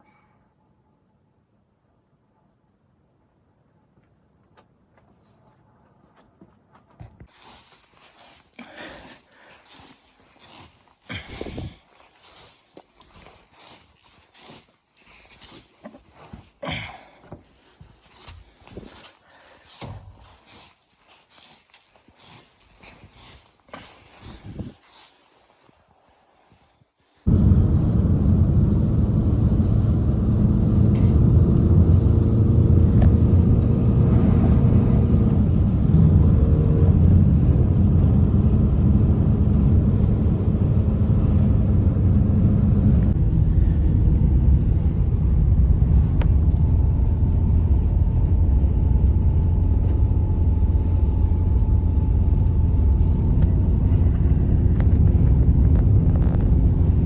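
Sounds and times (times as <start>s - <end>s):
blizzard wind rumble: 7.2s - 57.0s.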